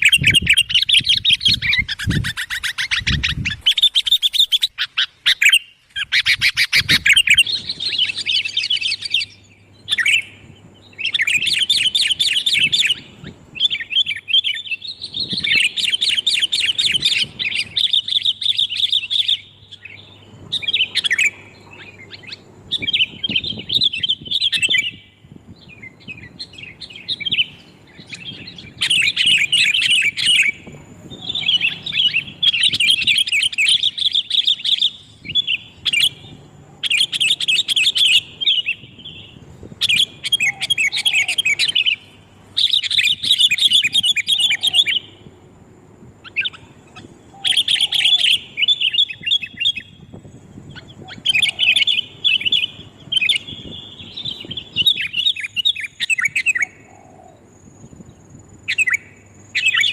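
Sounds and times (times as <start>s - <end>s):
bulbuls chattering: 26.4s - 45.4s.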